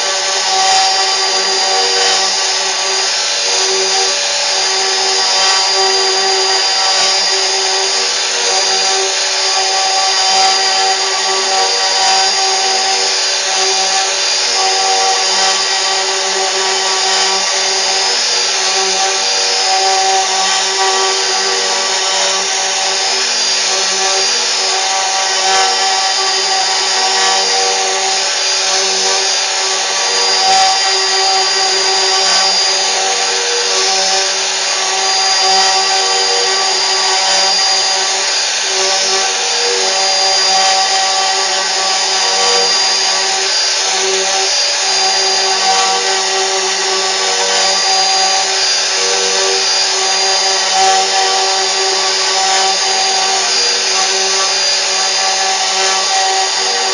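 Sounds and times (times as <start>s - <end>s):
cnc router whine: 0.0s - 56.9s.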